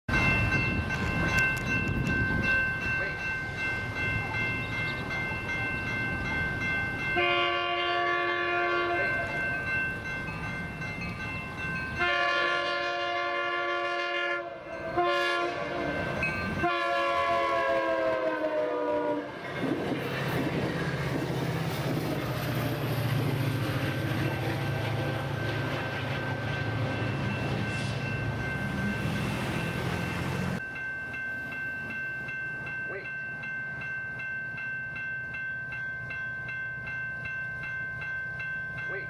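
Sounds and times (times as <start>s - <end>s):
crossing bells ringing: 0.1s - 39.0s
train rumbling past: 0.1s - 39.0s
train horn blasts: 7.2s - 9.3s, 12.0s - 19.4s.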